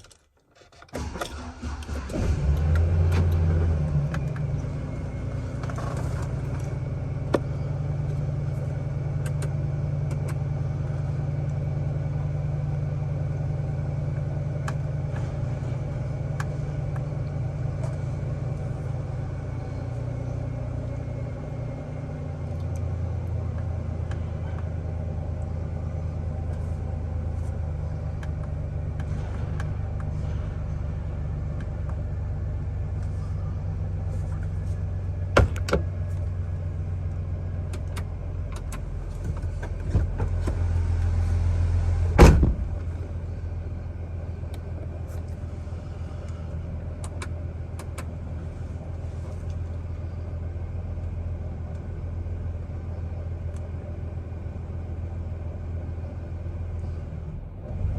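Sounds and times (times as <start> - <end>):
truck engine rough idle: 1.0 - 57.9
sharp engine knocks: 42.2 - 42.9.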